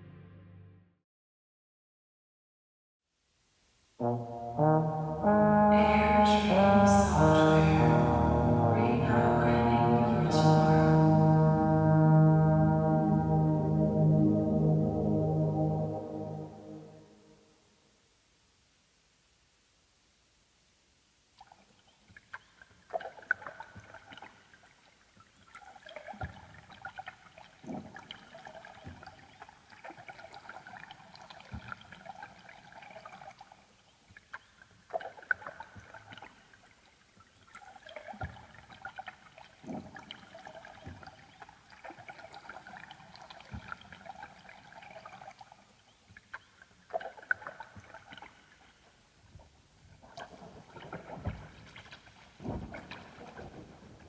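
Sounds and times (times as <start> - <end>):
ambient electronic chords: 0.0 - 0.8, 5.7 - 17.1.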